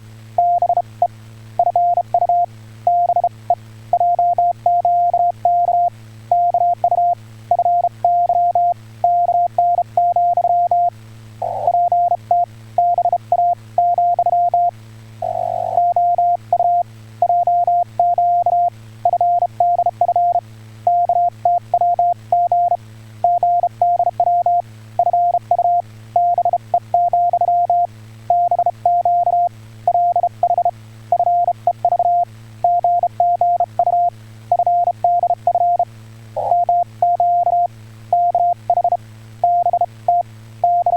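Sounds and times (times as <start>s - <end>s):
steady low hum: 0.0s - 40.9s
morse code tone: 11.5s - 35.8s, 36.4s - 40.9s.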